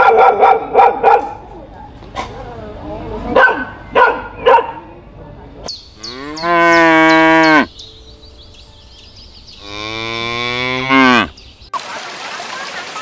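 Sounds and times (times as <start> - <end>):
cow mooing: 6.0 - 7.7, 9.6 - 11.4.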